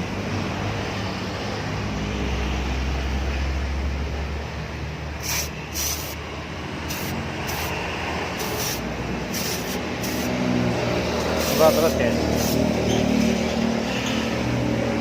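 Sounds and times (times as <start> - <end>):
aerosol can spraying: 5.2 - 6.2, 6.9 - 7.8, 8.4 - 10.4, 11.3 - 12.7.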